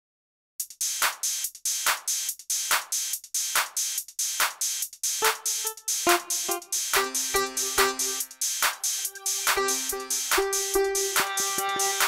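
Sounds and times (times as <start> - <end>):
drum machine beat: 0.6 - 12.0
synth notes: 5.2 - 8.3.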